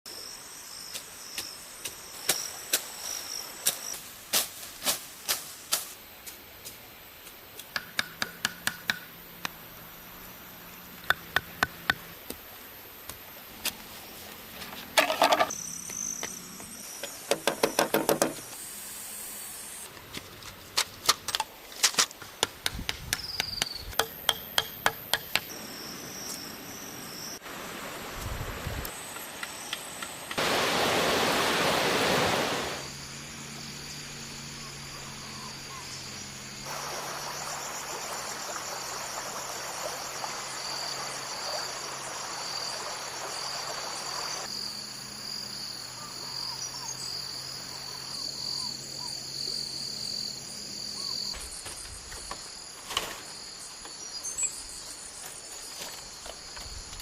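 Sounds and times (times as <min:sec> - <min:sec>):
insects trilling: 0:00.1 - 0:19.9, 0:23.1 - 0:28.2, 0:32.3 - 0:57.0
tool knocking on bamboo: 0:07.7 - 0:09.0, 0:17.3 - 0:18.4, 0:22.4 - 0:25.5.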